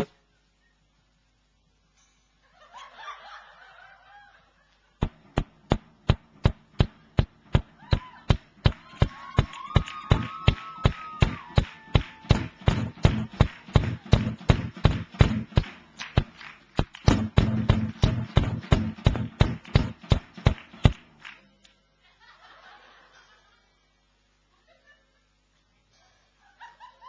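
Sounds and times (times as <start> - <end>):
drum kit steady beat: 5.0 - 21.2.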